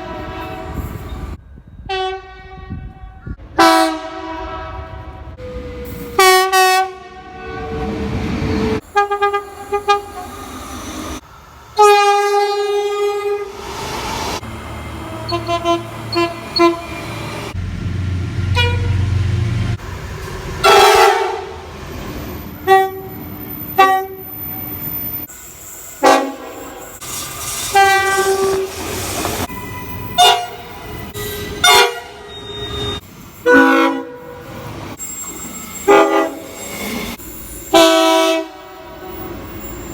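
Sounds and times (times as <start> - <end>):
locomotive air horns: 1.9 - 8.2, 8.8 - 10.5, 11.8 - 13.6, 15.1 - 17.2, 18.5 - 19.1, 20.6 - 21.6, 22.6 - 24.2, 26.0 - 34.6, 35.4 - 39.2.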